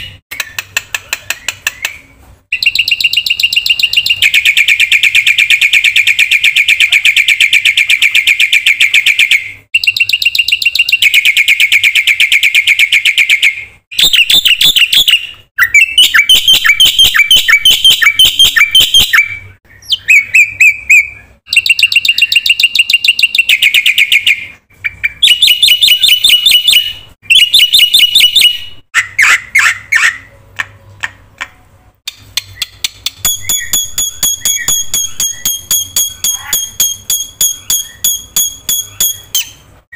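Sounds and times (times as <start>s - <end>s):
myna chattering song: 33.5s - 38.0s.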